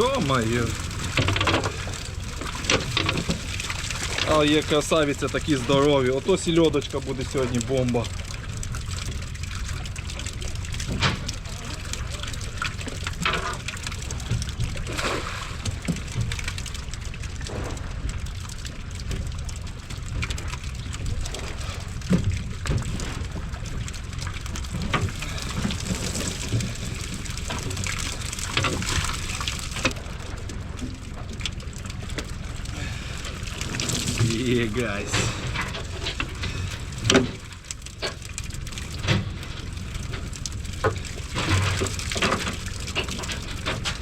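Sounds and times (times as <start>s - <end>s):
water splashing and trickling: 0.0s - 44.0s.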